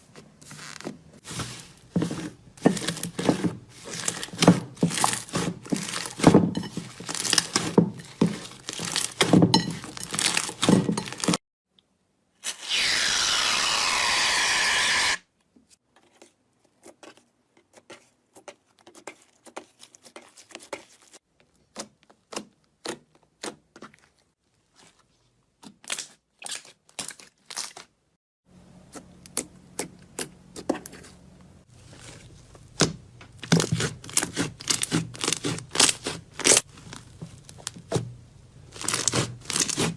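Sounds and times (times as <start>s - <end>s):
slime crackling and popping: 32.7s - 38.0s, 38.7s - 39.9s.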